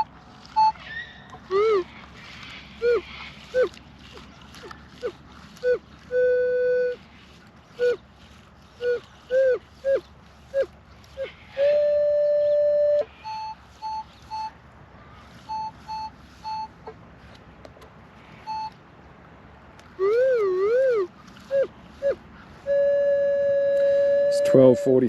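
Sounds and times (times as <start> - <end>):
metal detector chirps and beeps: 12.0 - 14.5, 15.5 - 16.8, 18.4 - 18.8, 23.4 - 25.0.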